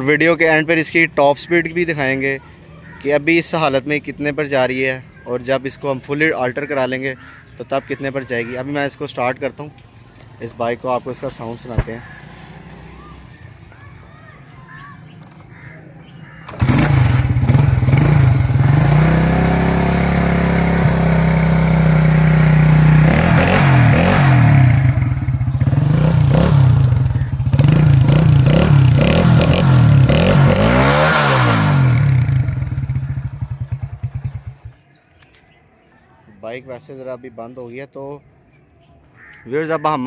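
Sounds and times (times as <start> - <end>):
motorcycle engine starting and revving: 11.6 - 13.7, 16.2 - 34.9.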